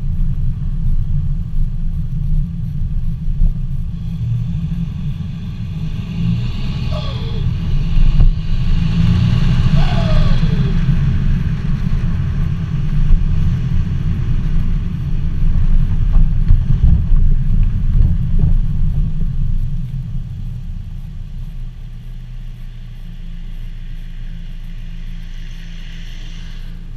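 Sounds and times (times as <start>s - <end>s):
diesel exhaust rumble: 0.0s - 26.9s
falling whistle: 9.8s - 10.8s.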